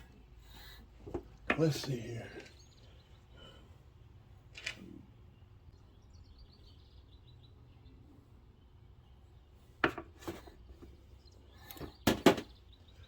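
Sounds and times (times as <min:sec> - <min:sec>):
bird chirping: 0:01.6 - 0:03.6, 0:05.2 - 0:09.7, 0:10.5 - 0:13.0.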